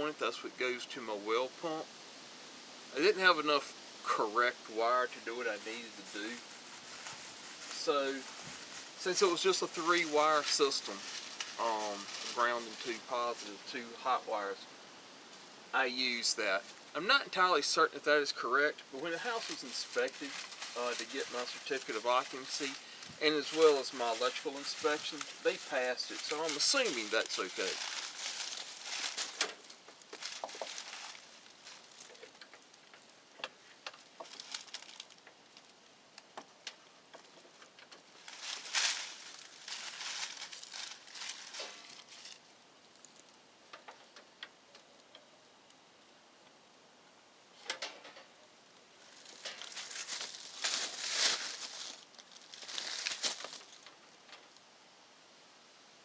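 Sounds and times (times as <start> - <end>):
rustling handling noise: 4.4 - 14.6, 15.3 - 44.9, 47.6 - 54.6.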